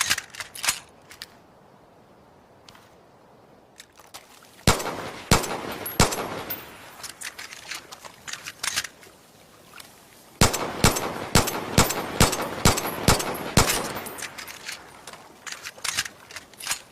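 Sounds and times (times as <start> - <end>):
pistol shots: 4.7 - 6.8, 10.4 - 14.3.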